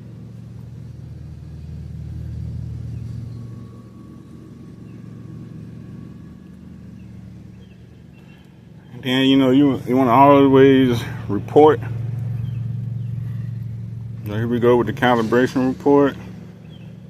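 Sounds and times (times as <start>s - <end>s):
car engine humming: 0.0s - 17.0s.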